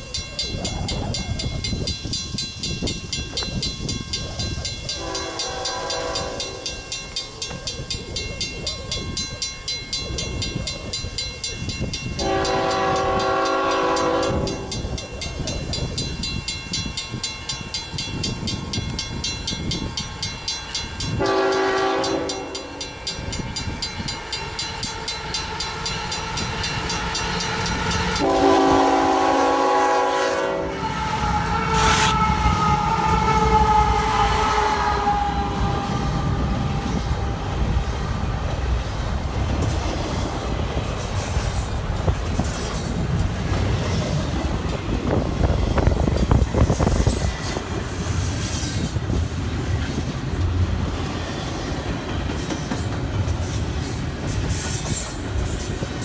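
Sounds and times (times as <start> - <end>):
locomotive bell ringing: 0.0 - 56.0
train horn: 5.0 - 6.7, 12.2 - 14.7, 21.2 - 22.8, 26.4 - 38.7.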